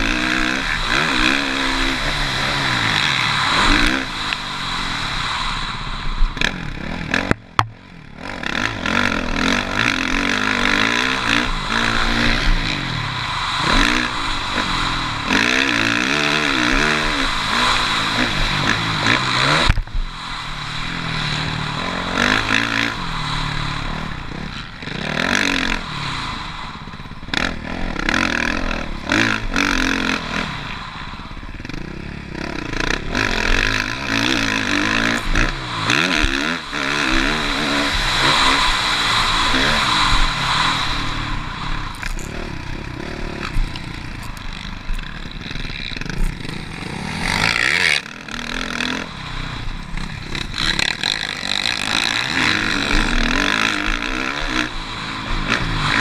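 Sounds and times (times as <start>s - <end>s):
motocross bike engine revving: 0.0s - 56.0s.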